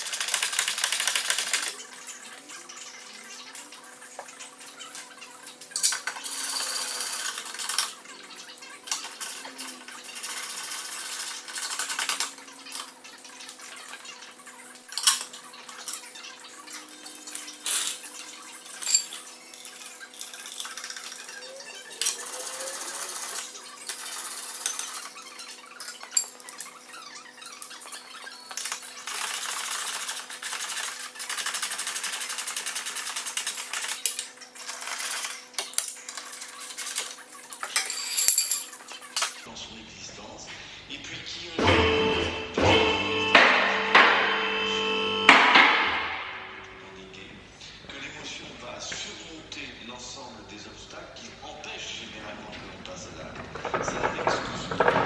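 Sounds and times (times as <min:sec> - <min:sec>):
metal tools clinking and knocking: 0:00.0 - 0:39.5.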